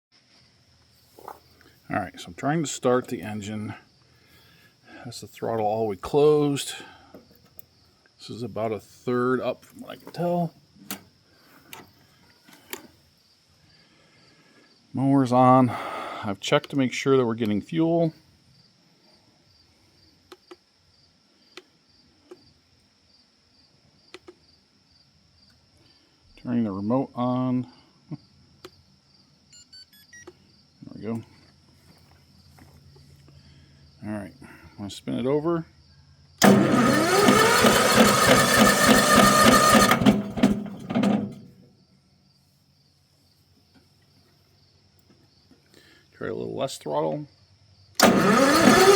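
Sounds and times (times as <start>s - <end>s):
faint cricket chirping: 0.1s - 36.4s, 41.4s - 48.0s
engine starter cranking: 9.7s - 11.1s, 36.4s - 41.7s, 48.0s - 48.9s.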